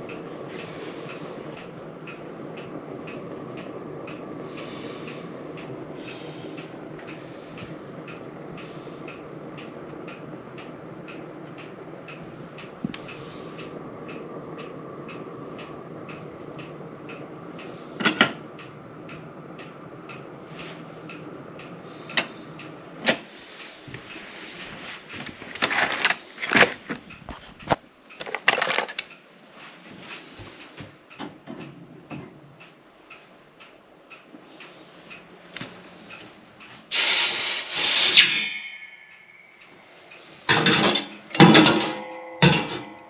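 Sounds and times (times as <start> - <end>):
gas torch hissing: 0.0 - 25.2, 34.5 - 43.0
faint regular ticking: 0.0 - 28.4, 29.0 - 37.0, 38.4 - 43.0
metallic knocks and clatters: 40.5 - 43.0.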